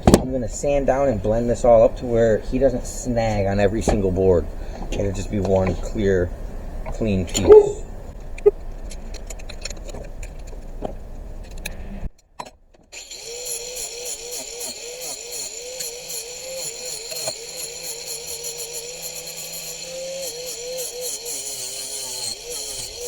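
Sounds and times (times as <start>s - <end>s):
angle grinder sanding wood: 13.0s - 23.0s.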